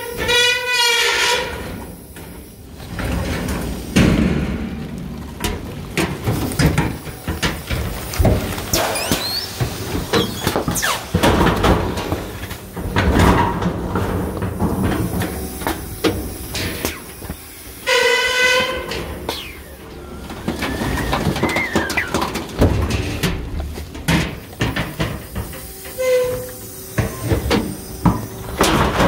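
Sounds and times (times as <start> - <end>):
garbage truck compactor crushing bags: 0.0 - 29.0
truck engine rumble: 0.0 - 29.0
sharp pops and cracks: 4.0 - 11.8
air whistling from a bag: 8.6 - 11.2, 15.0 - 22.4.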